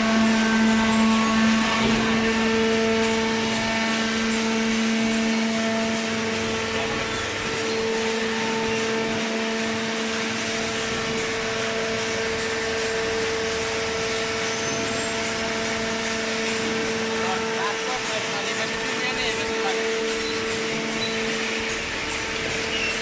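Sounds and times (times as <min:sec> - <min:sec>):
constant mechanical whine: 0:00.0 - 0:23.0
hydraulic pump motor humming: 0:00.0 - 0:23.0.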